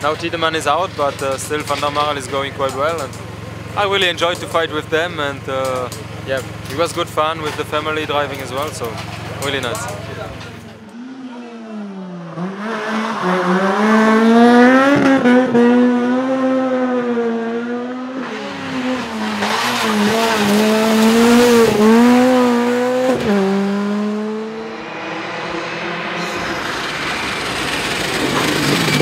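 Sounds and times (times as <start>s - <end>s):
rally car engine at high revs: 0.0s - 29.0s
rush of noise: 20.8s - 29.0s.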